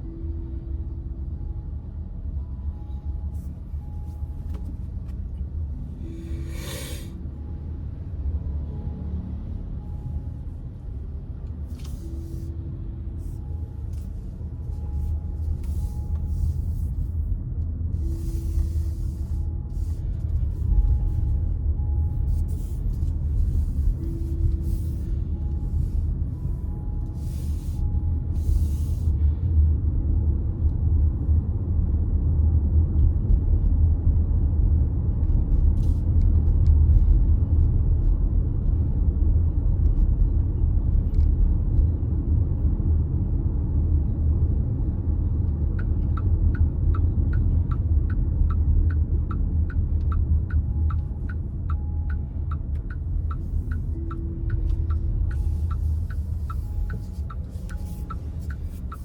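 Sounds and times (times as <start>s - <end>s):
road and engine rumble: 0.0s - 59.0s
turn signal ticking: 11.4s - 29.2s, 44.6s - 59.0s.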